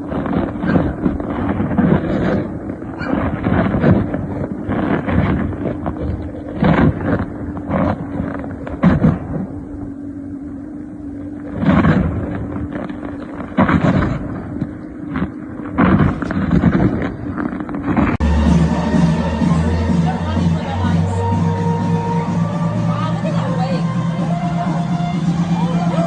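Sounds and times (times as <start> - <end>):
loud thumps: 0.0 - 10.0, 11.3 - 25.6
gusts of noise: 0.0 - 26.0
low hum: 0.0 - 26.0
music with steady beat: 18.2 - 26.0.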